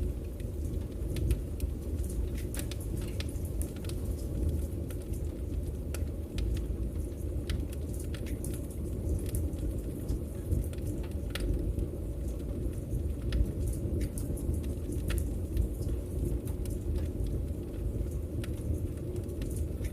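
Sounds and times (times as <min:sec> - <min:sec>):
low rumble of fire: 0:00.0 - 0:19.9
wood fire crackling: 0:00.0 - 0:19.9.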